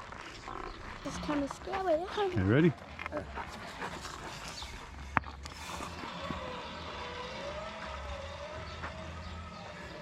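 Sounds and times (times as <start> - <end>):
zip line pulley whine: 3.8 - 10.0.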